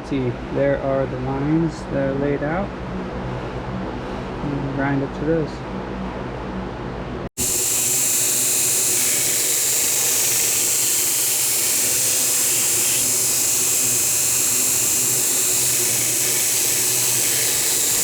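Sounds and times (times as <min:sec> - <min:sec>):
grinder whining and hissing: 0:07.4 - 0:18.0.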